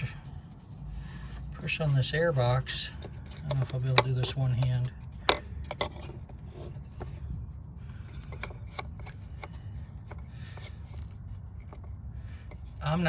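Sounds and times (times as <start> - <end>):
plastic rubbing on plastic: 0.0 - 2.2.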